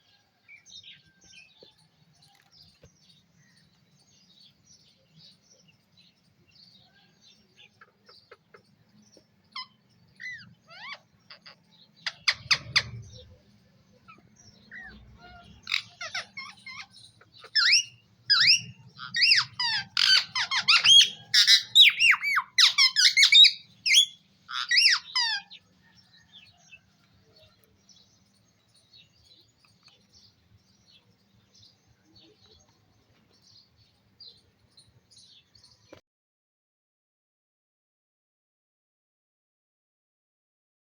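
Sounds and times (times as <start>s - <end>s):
parrot chirping and squawking: 9.6s - 13.3s, 14.0s - 25.7s.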